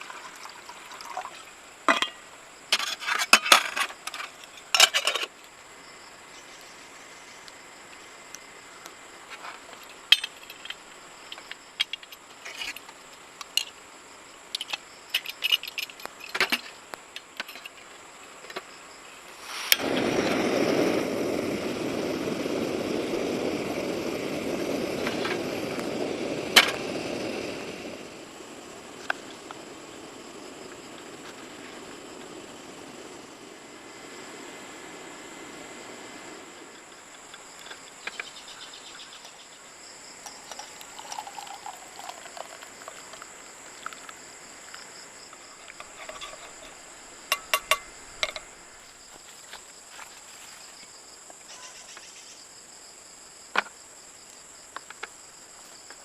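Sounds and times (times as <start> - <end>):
steady rushing noise: 19.4 - 37.2.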